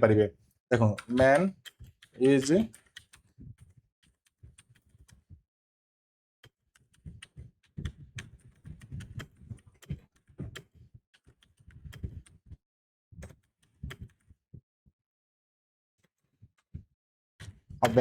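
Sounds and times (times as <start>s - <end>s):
computer keyboard typing: 0.8s - 3.3s.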